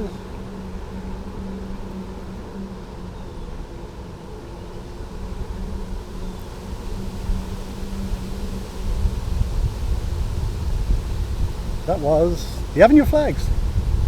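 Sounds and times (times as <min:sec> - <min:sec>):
wind on microphone: 0:05.0 - 0:14.0
bicycle tyres rumbling on path: 0:05.3 - 0:14.0.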